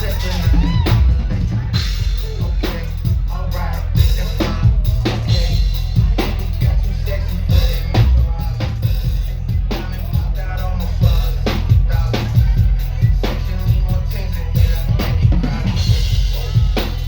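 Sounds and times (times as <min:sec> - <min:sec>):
live band music: 0:00.0 - 0:17.0.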